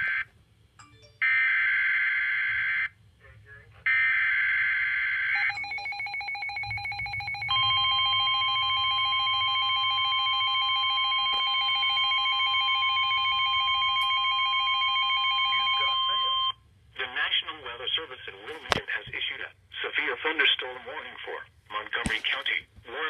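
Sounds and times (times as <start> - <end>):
warbling electronic alarm: 1.2 - 2.9, 3.9 - 16.6
steady warning tone: 5.1 - 16.6.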